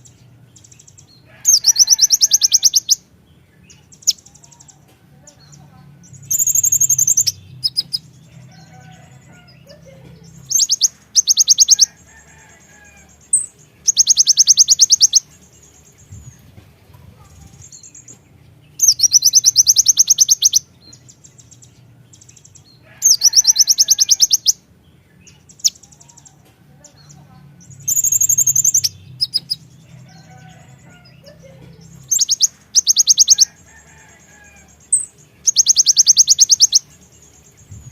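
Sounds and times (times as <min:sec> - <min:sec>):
bird rattling trills: 0:10.4 - 0:18.1, 0:27.7 - 0:31.2
faint low hum: 0:36.4 - 0:37.9.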